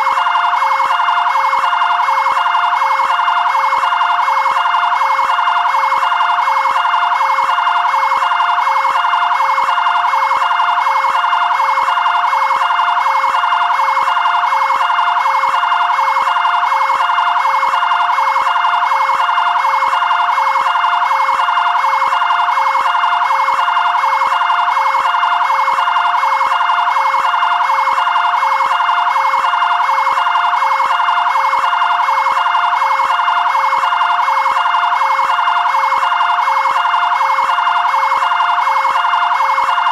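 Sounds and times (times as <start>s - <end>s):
electronic siren: 0.0s - 39.9s.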